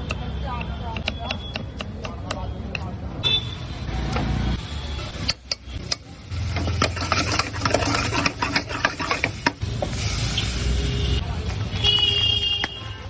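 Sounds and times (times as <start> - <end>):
metal spatula scraping pan: 6.5 - 9.6.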